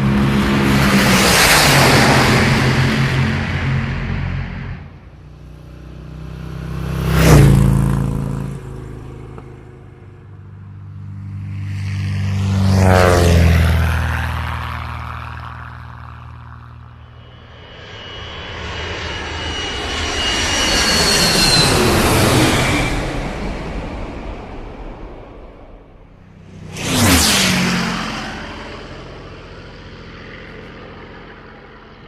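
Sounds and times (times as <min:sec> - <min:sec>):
vehicles passing by: 0:00.0 - 0:32.0
high whining tones: 0:15.3 - 0:29.3.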